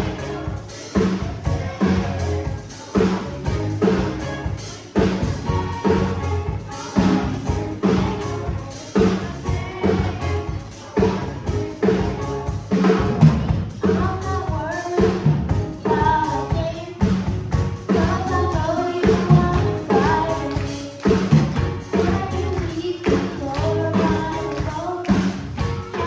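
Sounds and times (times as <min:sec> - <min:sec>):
children's choir singing gospel: 0:00.0 - 0:26.0
drum kit beat: 0:00.0 - 0:26.0.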